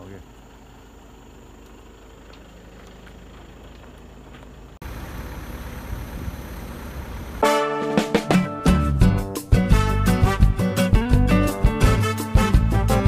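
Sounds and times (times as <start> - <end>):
engine idling: 0.0 - 7.5
rough engine rumble: 0.0 - 12.0.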